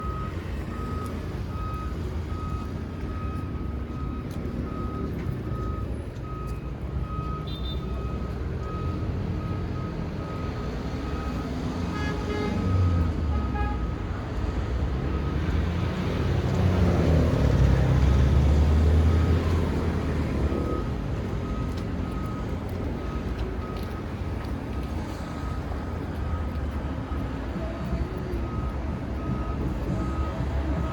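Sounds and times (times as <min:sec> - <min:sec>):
reversing alarm beeping: 0:00.0 - 0:14.0, 0:15.0 - 0:16.2, 0:18.8 - 0:30.9
street traffic rumbling: 0:00.0 - 0:30.9
vehicle passing: 0:14.8 - 0:30.9.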